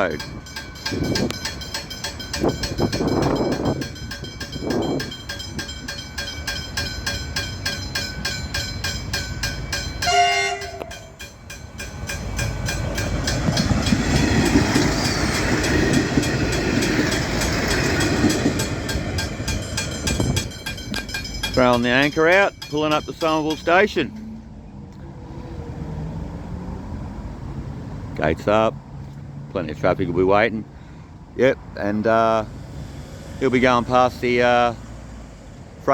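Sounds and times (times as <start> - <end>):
level crossing bells ringing: 0.0 - 24.5
train engine and wheels rumbling: 0.0 - 35.9
train horn: 10.0 - 11.2.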